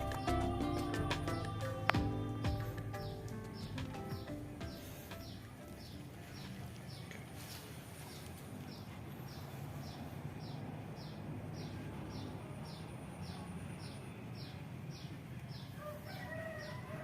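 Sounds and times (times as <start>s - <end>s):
steady low hum: 0.0s - 6.9s.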